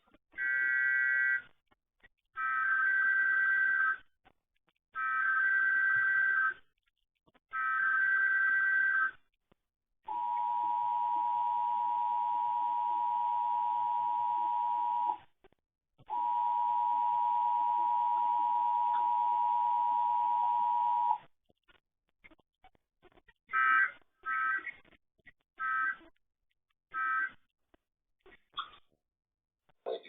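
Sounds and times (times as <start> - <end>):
two-tone attention signal: 10.1 - 15.2, 16.1 - 21.2.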